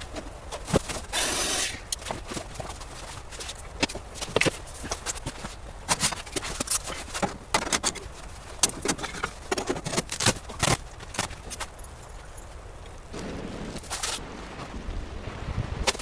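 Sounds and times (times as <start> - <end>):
sharp clicks and knocks: 3.8 - 11.7.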